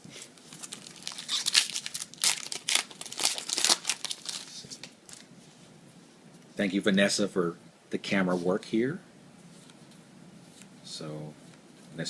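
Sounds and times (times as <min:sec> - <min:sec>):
foil wrapper crinkling and tearing: 0:00.4 - 0:05.3.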